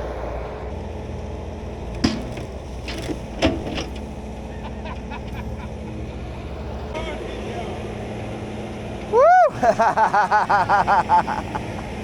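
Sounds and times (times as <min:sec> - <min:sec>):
skid steer engine running: 0:00.0 - 0:12.0
sharp knocks: 0:02.0 - 0:04.0.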